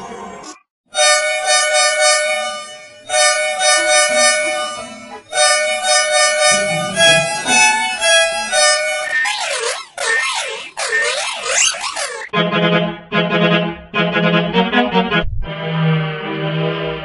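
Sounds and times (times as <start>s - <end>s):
bus horn blasts: 1.0s - 9.2s.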